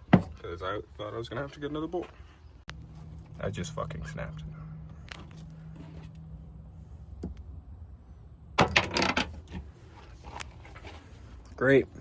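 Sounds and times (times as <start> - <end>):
metal objects clattering: 8.6 - 9.6.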